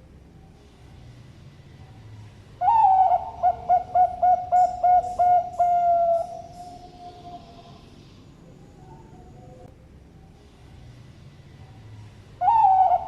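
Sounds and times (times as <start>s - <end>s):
dove cooing: 2.6s - 9.7s, 12.4s - 13.0s.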